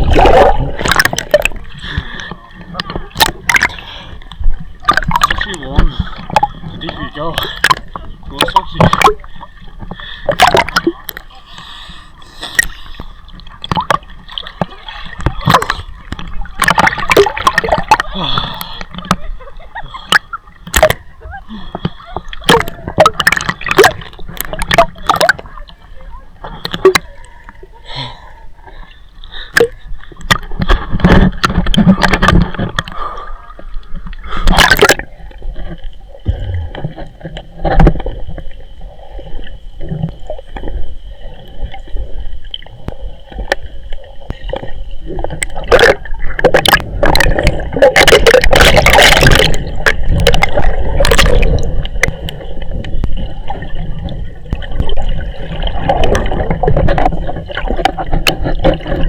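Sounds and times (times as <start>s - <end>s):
river water splashing: 44.4s - 52.5s.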